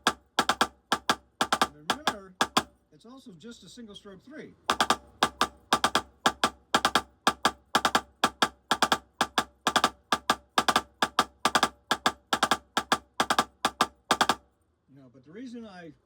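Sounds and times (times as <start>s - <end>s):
drum kit and cymbals ringing: 0.0s - 2.7s
drumstick strokes: 0.0s - 2.7s, 4.7s - 14.4s.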